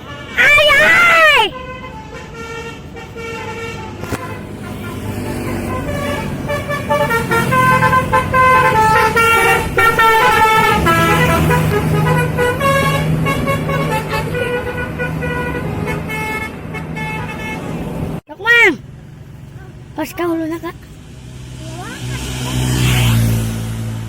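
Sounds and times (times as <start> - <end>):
bus horn tooting melody: 0.0 - 18.0
bus engine drone: 0.0 - 24.0.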